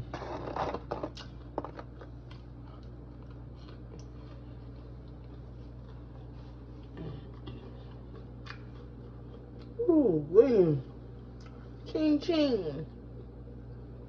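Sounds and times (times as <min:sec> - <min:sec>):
steady low hum: 0:00.0 - 0:14.0
chewing mouth noises: 0:01.0 - 0:09.8.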